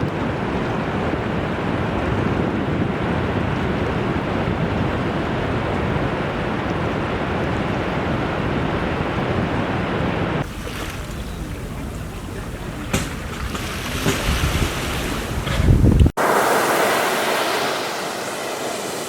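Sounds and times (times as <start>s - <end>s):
ocean waves rushing: 2.6s - 19.0s
hissing water: 10.4s - 19.0s.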